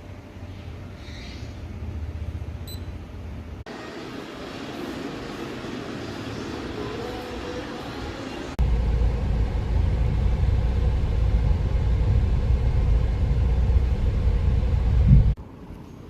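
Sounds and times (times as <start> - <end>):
steady low rumble: 7.3 - 15.5.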